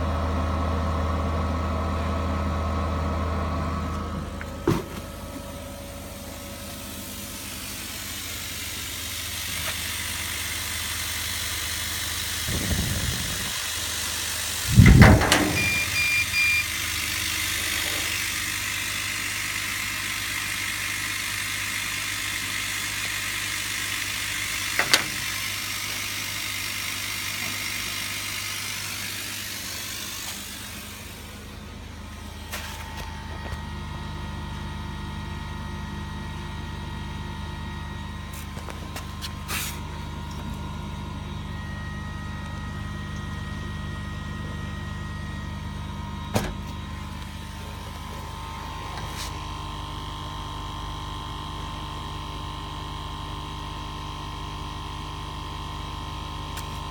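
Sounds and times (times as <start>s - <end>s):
laser cutter air hiss and hum: 5.9s - 32.8s
heavy thumps: 14.7s - 16.0s.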